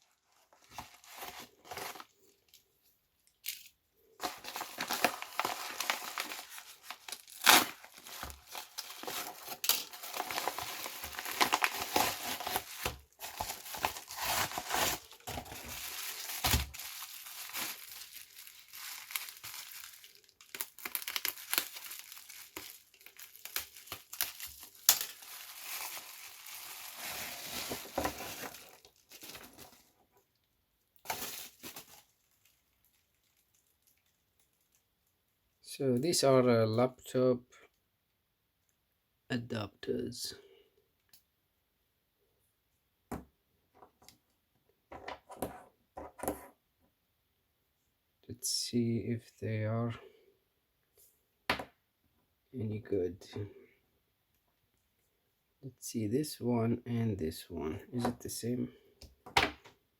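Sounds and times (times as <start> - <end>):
plastic packaging crinkling: 0.0 - 2.7, 3.4 - 29.9, 31.0 - 34.8.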